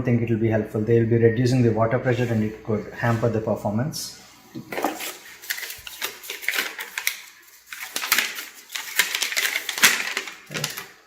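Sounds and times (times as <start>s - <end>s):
packaging crinkling: 4.7s - 11.0s.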